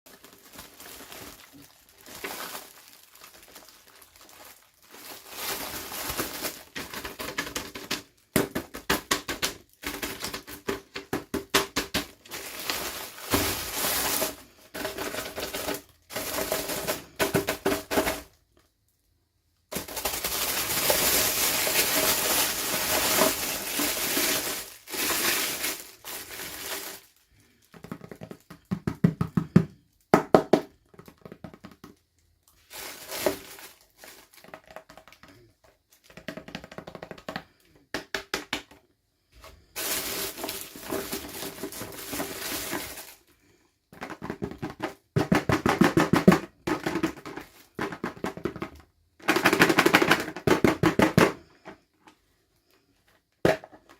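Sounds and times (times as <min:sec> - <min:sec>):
packaging crinkling: 0:00.1 - 0:18.3, 0:19.7 - 0:28.3, 0:32.5 - 0:35.1, 0:39.7 - 0:43.3.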